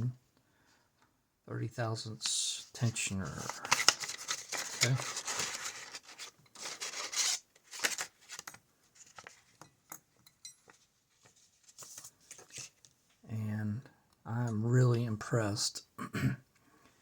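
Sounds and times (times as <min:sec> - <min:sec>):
hands rustling and rubbing: 0:02.2 - 0:09.6, 0:10.6 - 0:13.0.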